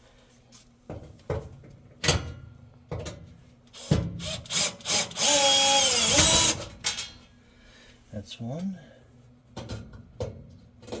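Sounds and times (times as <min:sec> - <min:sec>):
power drill-driver running: 0:04.5 - 0:06.6.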